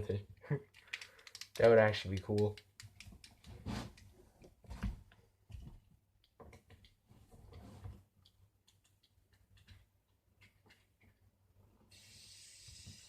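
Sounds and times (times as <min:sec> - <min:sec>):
faint plastic clicks: 0:00.6 - 0:04.1.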